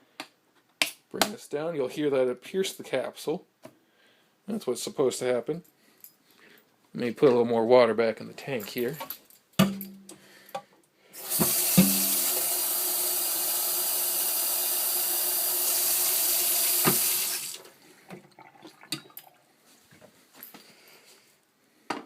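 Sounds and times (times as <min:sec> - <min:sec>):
tap water running into tank: 0:11.2 - 0:19.4.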